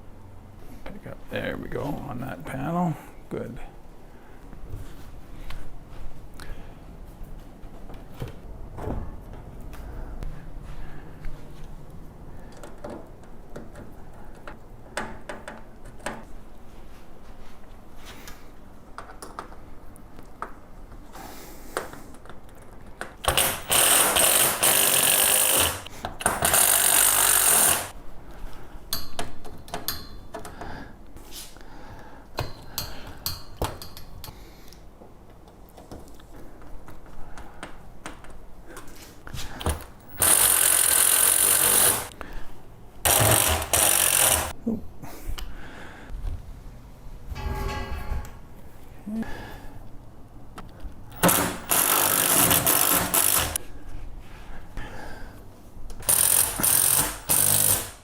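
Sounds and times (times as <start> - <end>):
parts knocking and clicking: 12.5 - 16.3
power drill driving screws: 23.2 - 27.9, 40.2 - 42.1, 43.1 - 44.5, 51.2 - 53.6, 56.0 - 58.0.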